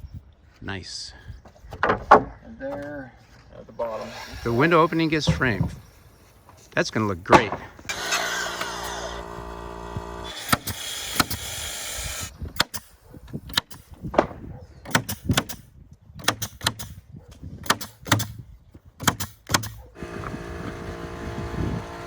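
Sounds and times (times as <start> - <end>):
motor hum: 7.8 - 12.3, 19.9 - 22.0.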